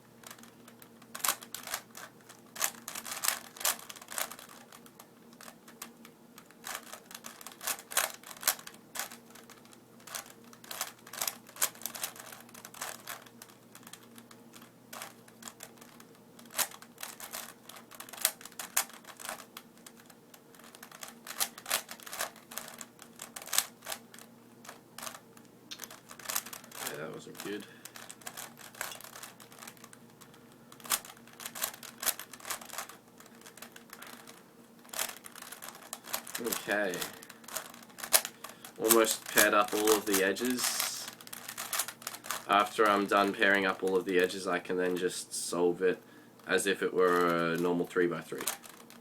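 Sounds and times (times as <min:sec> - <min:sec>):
plastic puzzle cube clicking: 0:01.1 - 0:05.9, 0:06.6 - 0:26.9, 0:27.9 - 0:30.0, 0:30.8 - 0:43.1, 0:47.1 - 0:47.4, 0:48.4 - 0:49.0.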